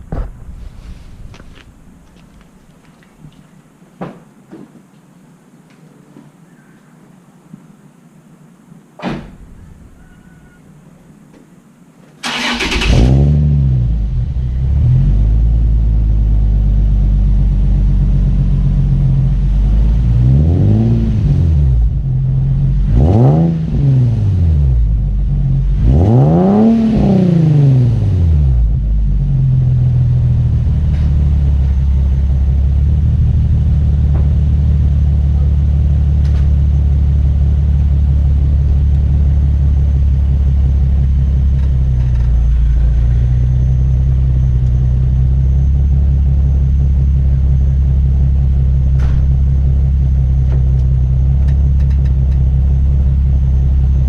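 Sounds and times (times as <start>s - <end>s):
car engine idling and revving: 12.3s - 54.0s.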